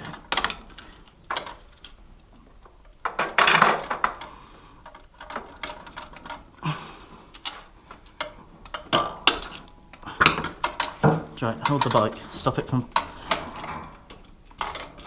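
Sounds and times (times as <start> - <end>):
metal tools clinking and clattering: 3.0 - 15.0.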